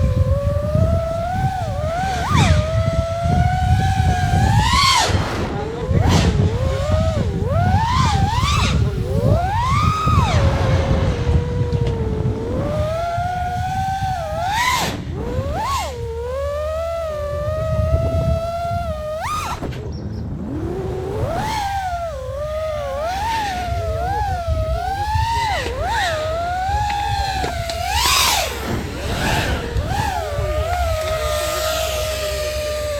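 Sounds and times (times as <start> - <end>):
low rumble: 0.0 - 16.3
quadcopter motors whining: 0.0 - 32.9.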